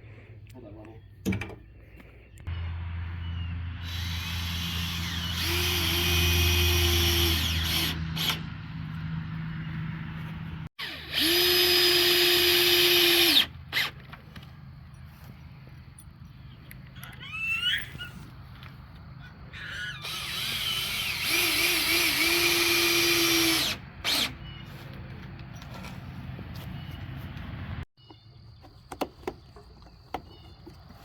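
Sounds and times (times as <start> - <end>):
electric drill running: 3.8 - 8.5, 10.8 - 14.0, 20.0 - 24.4.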